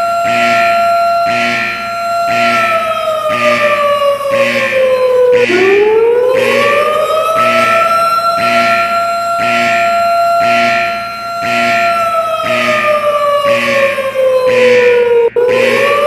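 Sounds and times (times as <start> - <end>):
wailing siren tone: 0.0 - 16.0
pulsing tone: 14.9 - 16.0.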